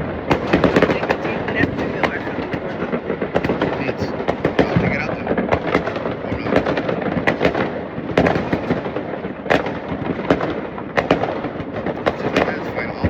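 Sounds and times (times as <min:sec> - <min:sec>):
fireworks crackling: 0:00.0 - 0:13.0
loud firecracker cracks: 0:00.0 - 0:13.0.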